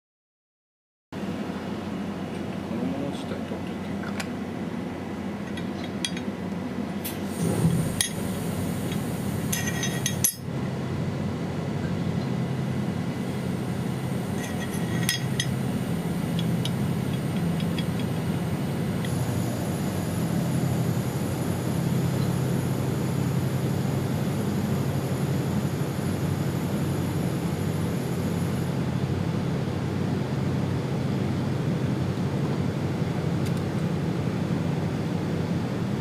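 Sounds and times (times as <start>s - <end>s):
machining center humming: 1.2s - 36.0s
thin high whine: 7.2s - 10.5s, 11.9s - 29.3s
sharp metallic clinks and knocks: 9.5s - 10.5s.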